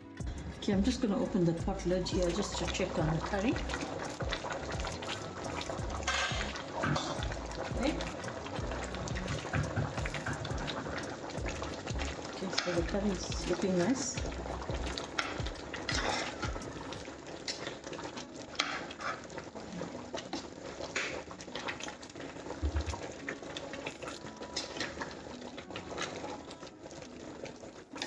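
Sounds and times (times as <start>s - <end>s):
curry bubbling in a pot: 0.2s - 28.0s
sharp pops and taps: 3.6s - 13.6s, 14.2s - 16.7s.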